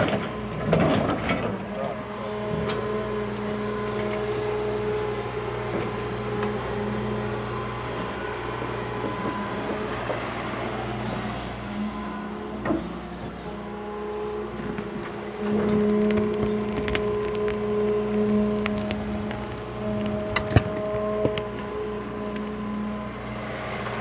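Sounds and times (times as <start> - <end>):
diesel engine running: 0.0 - 24.0.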